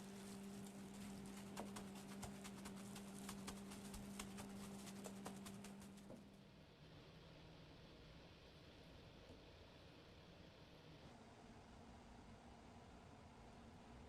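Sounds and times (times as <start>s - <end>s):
faint light clicks and taps: 0.0s - 6.2s
low electrical hum: 0.0s - 14.0s.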